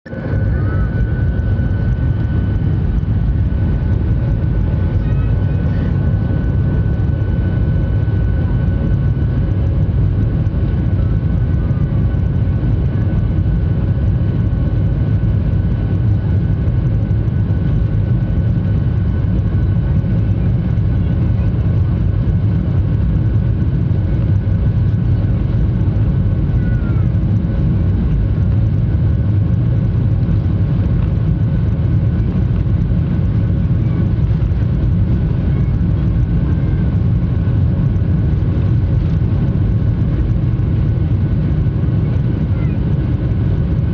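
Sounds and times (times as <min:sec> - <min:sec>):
jet engines rumbling in cabin: 0:00.0 - 0:43.9
thin steady engine whine: 0:00.0 - 0:43.9.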